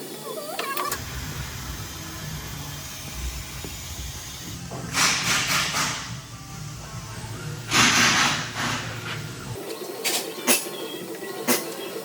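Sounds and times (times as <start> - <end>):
low shop hum: 0.0 - 12.0
compressed air hissing: 0.9 - 6.8.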